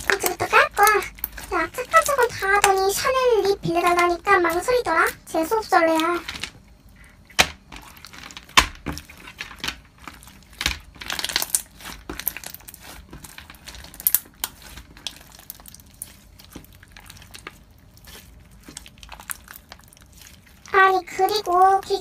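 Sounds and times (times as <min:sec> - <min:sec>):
slime squished by hand crackling: 0:07.3 - 0:20.7.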